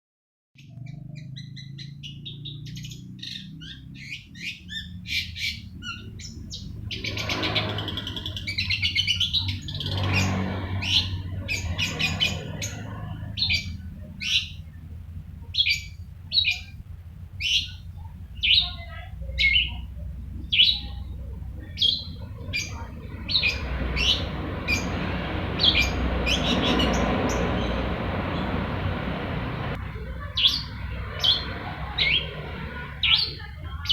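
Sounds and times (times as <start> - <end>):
bird singing: 0.6 - 33.9
steady background rush: 16.1 - 33.8.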